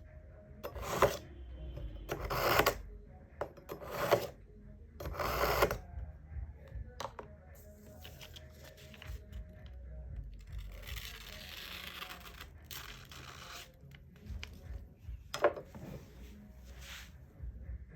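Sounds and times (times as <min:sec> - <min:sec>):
knife blade scraping: 0:00.7 - 0:01.2, 0:02.1 - 0:02.8, 0:03.7 - 0:04.3.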